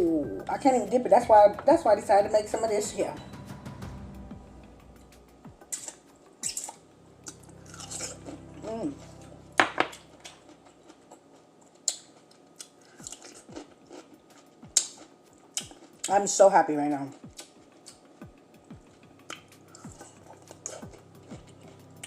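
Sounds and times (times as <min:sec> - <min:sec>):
person chewing: 0:05.0 - 0:16.1, 0:17.1 - 0:22.0.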